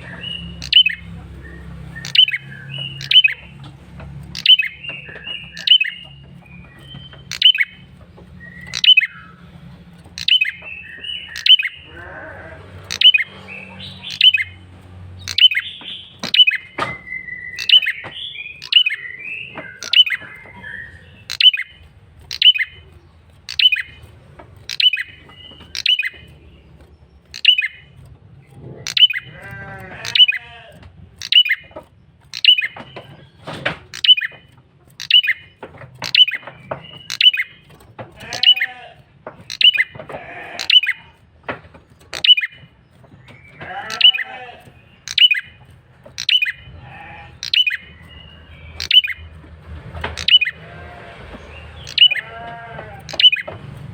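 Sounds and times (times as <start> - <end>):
songbird sharp high calls: 0.0 - 3.5, 4.3 - 6.1, 6.8 - 7.8, 8.4 - 9.4, 10.2 - 14.6, 15.2 - 22.9, 23.5 - 24.0, 24.7 - 26.3, 27.3 - 27.9, 28.8 - 30.6, 31.2 - 31.7, 32.3 - 32.9, 35.0 - 37.6, 39.5 - 39.9, 40.5 - 41.1, 43.4 - 45.5, 46.2 - 49.2, 50.2 - 50.6, 51.8 - 52.3, 53.0 - 53.5
harsh bird chattering: 0.0 - 49.4, 50.0 - 53.6.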